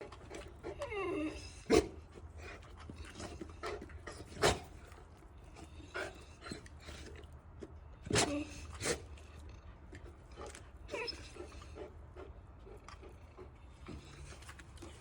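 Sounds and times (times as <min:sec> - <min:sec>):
paws clicking and shuffling: 0:00.0 - 0:15.0
dog whining: 0:00.6 - 0:01.7, 0:08.0 - 0:08.9, 0:10.9 - 0:11.8.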